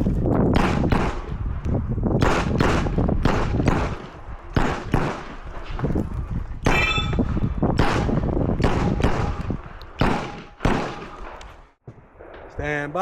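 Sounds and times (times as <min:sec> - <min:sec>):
pistol shots: 0:00.5 - 0:01.4, 0:02.2 - 0:05.6, 0:06.6 - 0:11.4
steel target ringing: 0:06.7 - 0:07.3.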